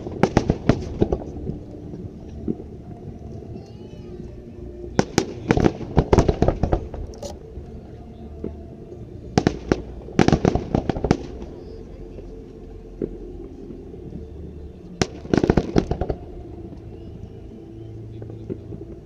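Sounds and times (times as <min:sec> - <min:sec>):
fireworks bangs: 0:00.0 - 0:02.7, 0:05.0 - 0:07.4, 0:09.3 - 0:11.8, 0:15.0 - 0:16.4.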